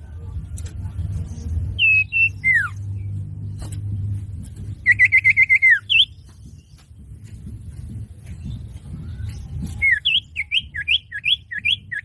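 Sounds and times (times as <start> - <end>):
bird whistling and chirping: 1.8 - 2.9, 4.8 - 6.8, 8.4 - 12.0.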